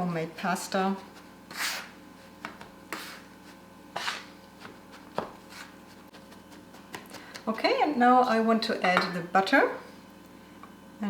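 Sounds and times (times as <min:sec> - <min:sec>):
bench scraper scraping dough: 0:01.0 - 0:07.5.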